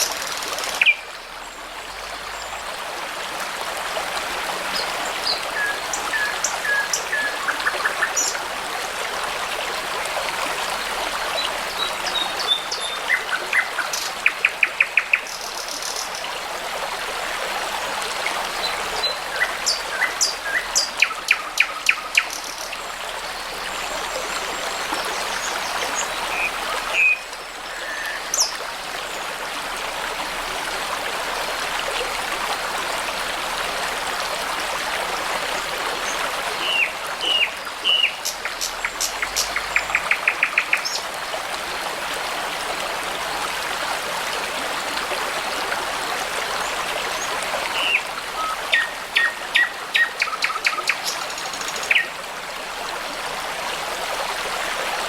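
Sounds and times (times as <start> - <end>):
babbling brook: 0.0 - 55.0
songbirds singing: 11.4 - 16.3, 36.0 - 41.1, 46.6 - 52.2.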